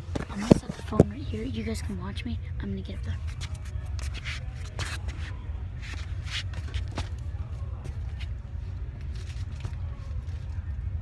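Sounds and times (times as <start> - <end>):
steady low rumble: 0.0 - 11.0
shuffling and rustling: 3.1 - 10.9.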